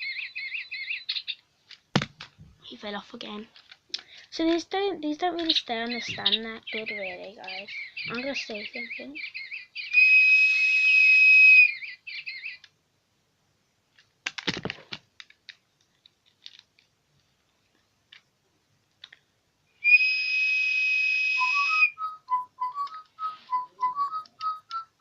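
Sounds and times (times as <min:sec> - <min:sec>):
electronic toy bird beeping: 0:05.9 - 0:10.0, 0:21.6 - 0:25.0
whistle blown: 0:09.8 - 0:11.9, 0:19.8 - 0:25.0.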